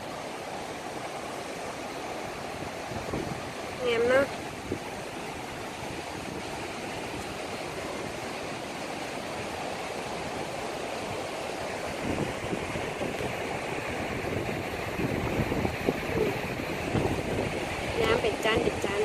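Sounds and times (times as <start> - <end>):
water rushing: 0.0 - 19.0
wind gusting on microphone: 0.0 - 19.0.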